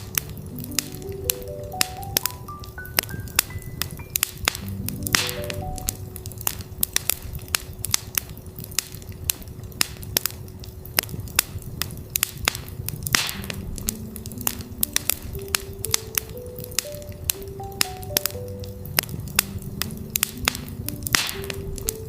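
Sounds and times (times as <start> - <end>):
soft ambient synth notes: 0.0 - 7.1
campfire crackling and popping: 0.0 - 22.0.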